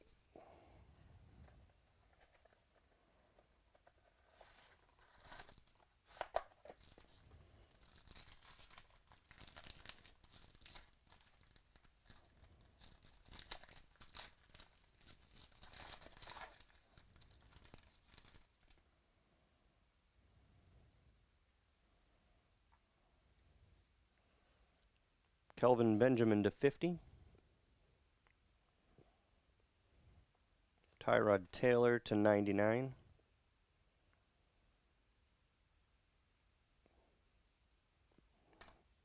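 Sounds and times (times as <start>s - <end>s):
plastic packaging tearing and crinkling: 4.3s - 18.8s.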